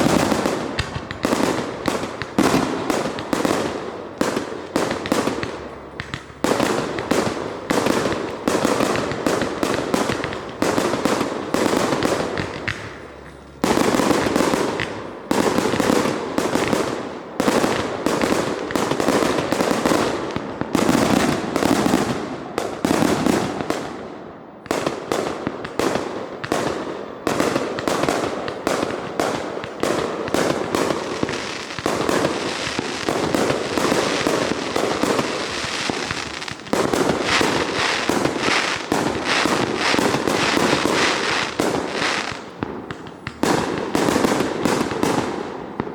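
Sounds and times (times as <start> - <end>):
fireworks explosions and crackling: 0.0 - 45.9.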